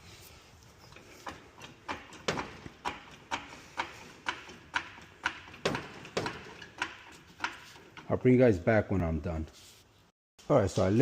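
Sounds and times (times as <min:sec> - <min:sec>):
floor jack pumping knocks: 0:01.2 - 0:08.1.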